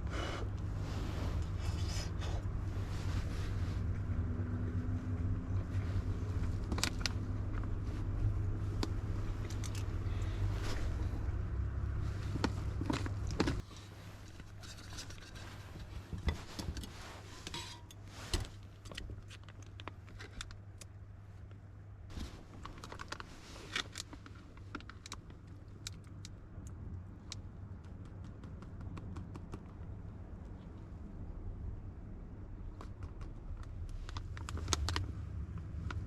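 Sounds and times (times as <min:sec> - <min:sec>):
low steady rumble: 0:00.0 - 0:36.0
small clicks and taps: 0:24.0 - 0:30.7.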